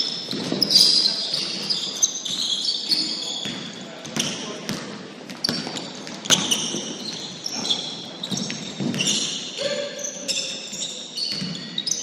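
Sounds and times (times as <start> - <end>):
sneakers squeaking on court: 0.0 - 12.0
basketball bouncing: 0.2 - 0.8, 3.4 - 9.3, 11.3 - 11.6.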